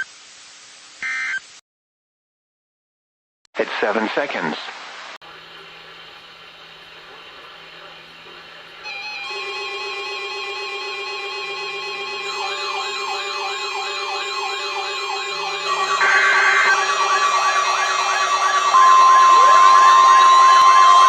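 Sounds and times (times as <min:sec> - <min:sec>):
sweeping siren-like tone: 0:08.8 - 0:21.0
steady electronic alert tone: 0:08.9 - 0:21.0.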